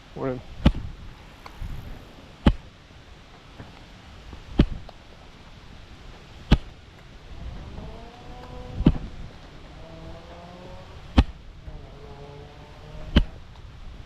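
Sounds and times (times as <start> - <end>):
wind rumble on microphone: 0.0 - 14.0
hiking staff striking ground: 4.5 - 5.0, 6.5 - 6.8.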